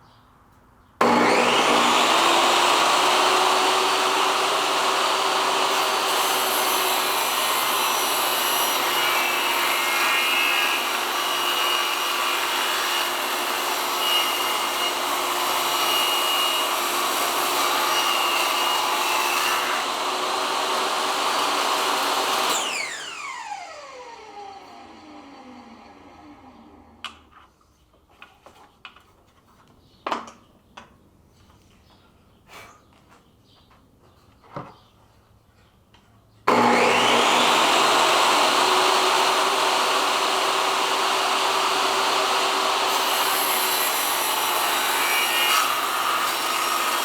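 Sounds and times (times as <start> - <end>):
power saw cutting wood: 1.0 - 27.1, 36.5 - 47.0.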